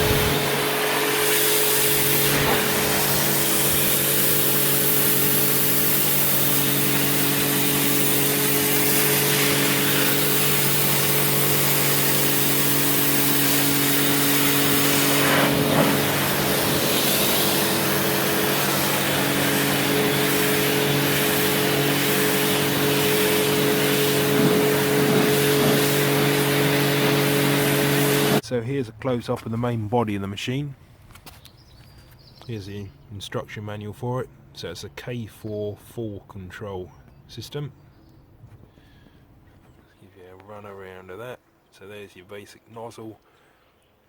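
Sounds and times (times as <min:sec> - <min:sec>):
pressure washer motor hum: 0:00.0 - 0:28.4
water jet hissing: 0:00.0 - 0:28.4.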